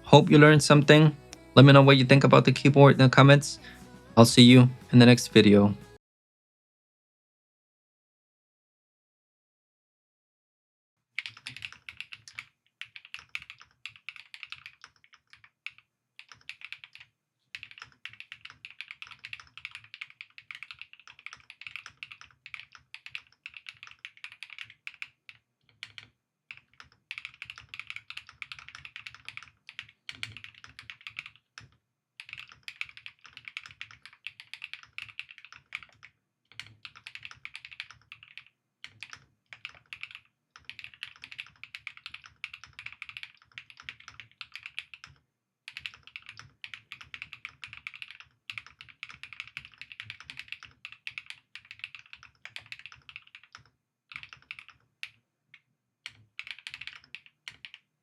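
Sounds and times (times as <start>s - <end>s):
fast mechanical keyboard typing: 11.2s - 55.2s, 56.0s - 57.9s.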